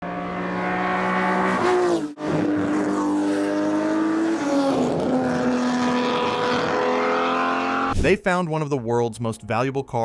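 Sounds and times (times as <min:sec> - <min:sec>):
racing car engine accelerating: 0:00.0 - 0:08.0.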